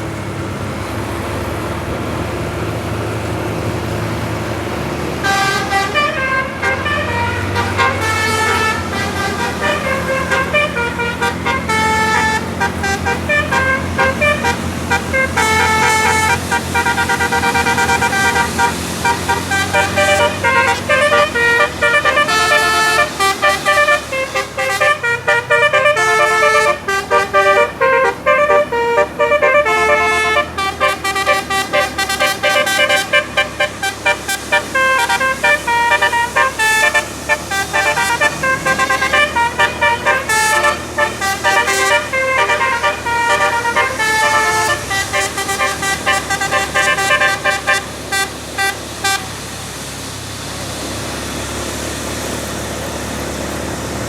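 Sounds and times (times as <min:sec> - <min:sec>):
musical bus air horn playing a tune: 0:05.1 - 0:49.5.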